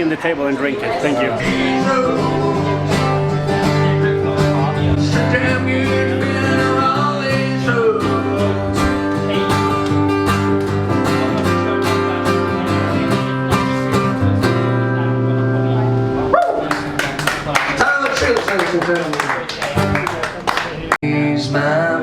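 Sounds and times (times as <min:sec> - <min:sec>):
guitar strumming chords: 0:01.3 - 0:17.5.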